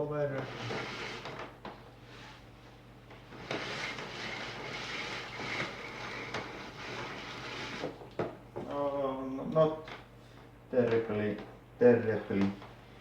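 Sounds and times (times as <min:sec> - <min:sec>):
vacuum cleaner cord reel rattling: 0:03.4 - 0:07.9.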